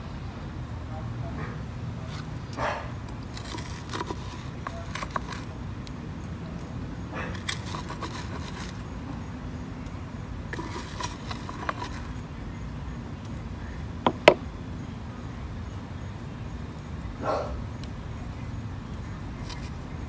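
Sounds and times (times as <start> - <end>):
soil scraping and crackling: 2.0 - 9.1, 10.4 - 12.3, 18.8 - 20.0.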